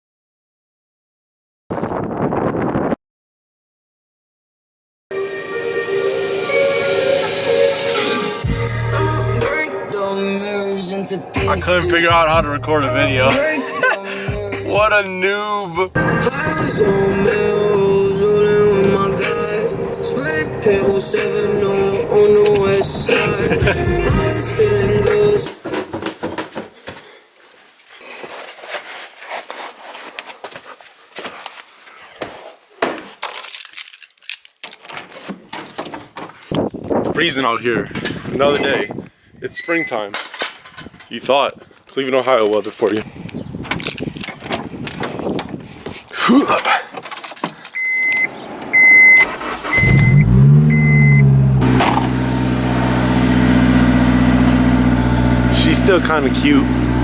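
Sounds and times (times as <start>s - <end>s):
car engine starting and idling: 7.4s - 13.6s, 15.8s - 25.5s, 47.8s - 57.0s
car warning chime beeping: 47.8s - 51.7s.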